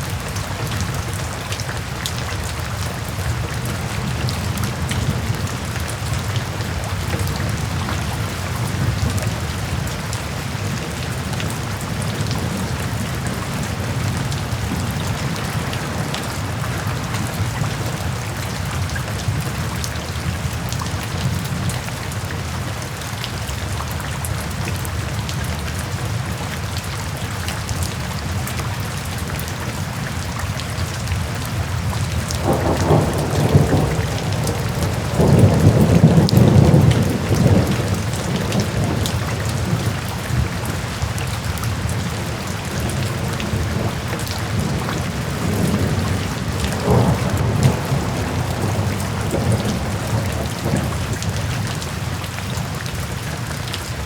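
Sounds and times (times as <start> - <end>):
steady rain falling: 0.0 - 54.0
thunder rumbling: 31.8 - 41.0, 41.7 - 52.1.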